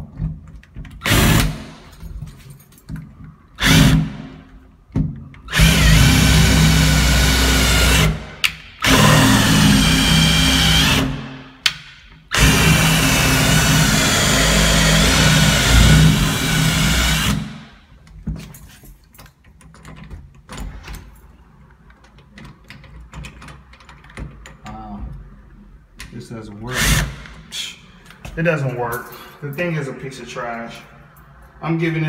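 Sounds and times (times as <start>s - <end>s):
power drill spinning: 5.5s - 11.3s, 12.3s - 17.6s.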